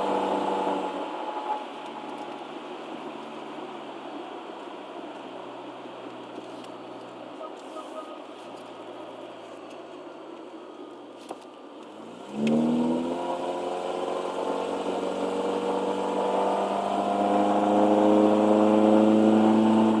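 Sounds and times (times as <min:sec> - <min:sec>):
car engine revving: 0:12.0 - 0:20.0.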